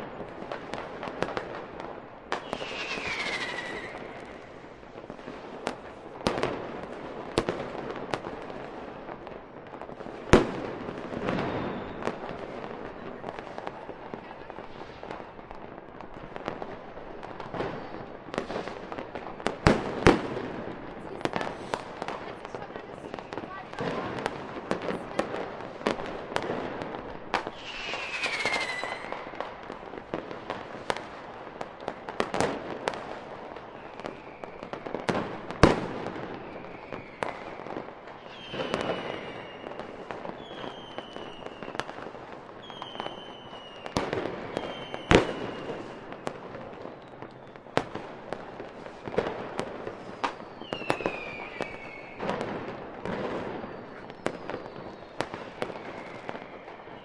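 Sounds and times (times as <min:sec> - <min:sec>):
fireworks bangs and pops: 0:00.0 - 0:57.0
fireworks crackling: 0:00.0 - 0:57.0
falling fireworks whistles: 0:02.2 - 0:06.5, 0:10.2 - 0:13.8, 0:19.6 - 0:31.2, 0:32.8 - 0:57.0.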